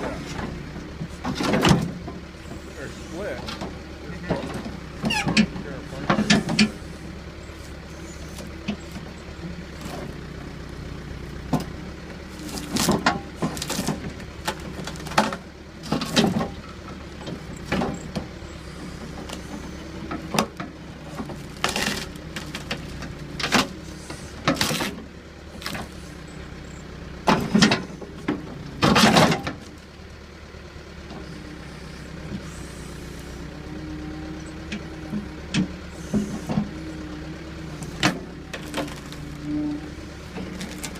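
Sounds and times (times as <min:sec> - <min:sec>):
backhoe engine running: 0:00.0 - 0:40.9
sharp knocks and clunks: 0:03.4 - 0:06.8.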